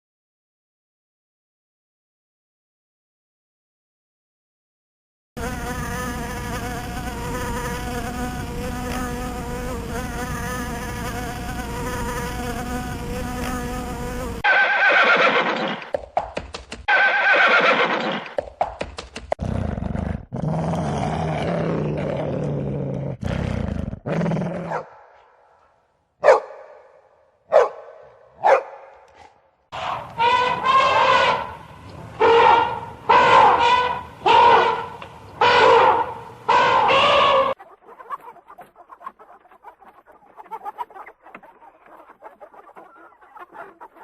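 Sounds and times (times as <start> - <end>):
insect buzzing: 5.4 - 14.5
loud shrill animal calls: 14.4 - 15.8, 16.9 - 18.2, 29.8 - 31.6, 32.2 - 37.6.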